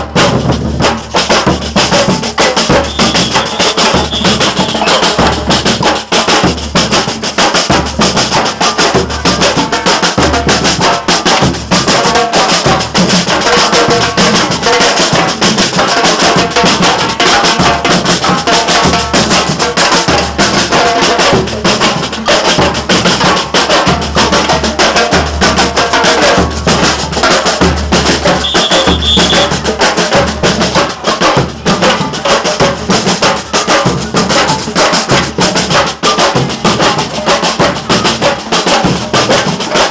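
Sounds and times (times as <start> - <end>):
deep bass drum beats: 0.0 - 12.0, 17.6 - 35.8
shakers and higher drums: 0.0 - 39.9
high steady tone: 2.8 - 5.2, 28.3 - 29.6.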